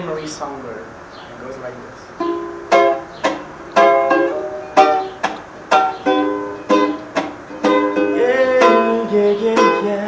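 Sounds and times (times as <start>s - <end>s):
ukulele strumming: 2.2s - 10.0s.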